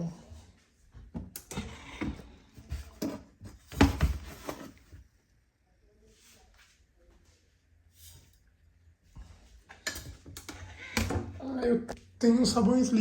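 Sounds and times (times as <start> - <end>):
rattling and knocking objects: 1.9 - 4.9.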